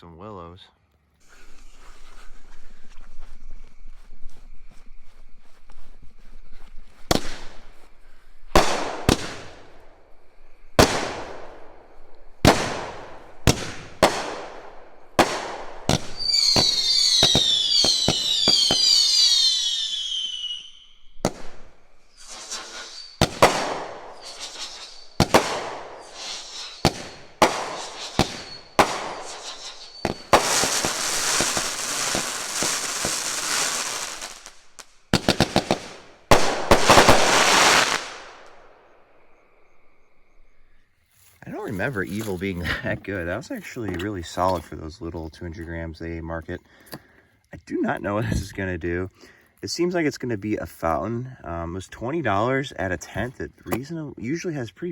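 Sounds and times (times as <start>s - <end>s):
falling firework whistles: 1.2s - 39.0s
dense firework crackling: 6.1s - 38.8s
firework launch shots and bursts: 7.0s - 7.8s, 8.5s - 10.0s, 10.8s - 38.7s.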